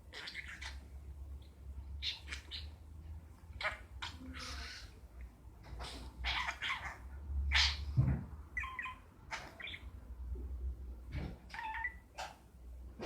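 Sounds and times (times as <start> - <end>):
talking bird harsh calls: 0.0 - 1.0, 2.0 - 2.9, 3.5 - 5.1, 5.8 - 8.0, 8.6 - 10.0.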